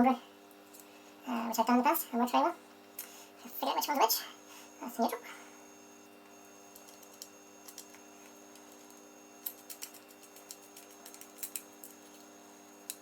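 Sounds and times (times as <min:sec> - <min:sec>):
faint steady hum: 0:00.0 - 0:13.0
clicks of small parts and wire: 0:06.7 - 0:13.0.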